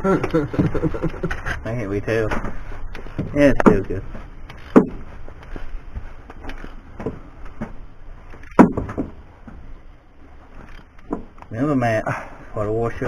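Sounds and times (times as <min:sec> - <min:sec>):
sharp knocks: 0:03.2 - 0:04.0, 0:04.6 - 0:05.1, 0:08.4 - 0:09.6.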